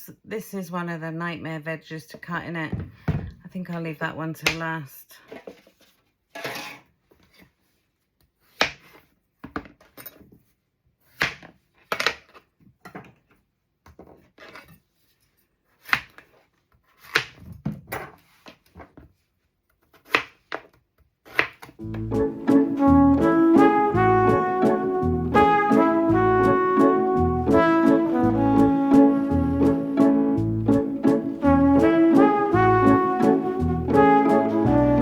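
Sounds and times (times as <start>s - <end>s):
knife chopping on a board: 11.2s - 11.5s, 21.3s - 21.7s
music with brass: 21.8s - 35.0s.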